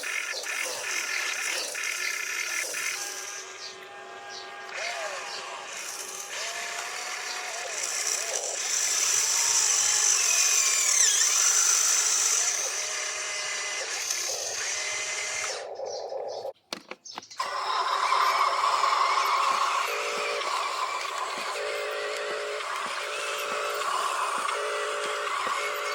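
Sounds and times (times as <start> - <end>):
small electric motors whining: 0.0 - 16.6, 17.3 - 25.9.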